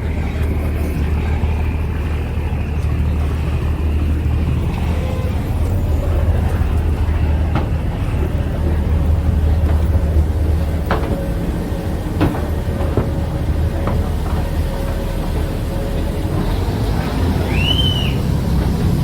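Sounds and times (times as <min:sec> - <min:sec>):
ferry engine droning: 0:00.0 - 0:19.0
sharp knocks: 0:09.3 - 0:16.7.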